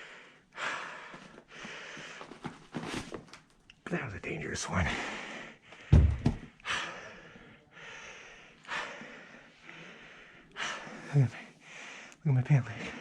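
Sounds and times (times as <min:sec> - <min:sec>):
man breathing hard: 0:00.0 - 0:02.4, 0:04.8 - 0:13.0
loud thump: 0:05.9 - 0:06.5.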